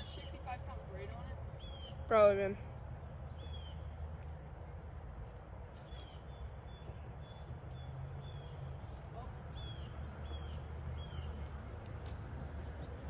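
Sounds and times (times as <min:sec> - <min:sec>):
steady low rumble: 0:00.0 - 0:13.0.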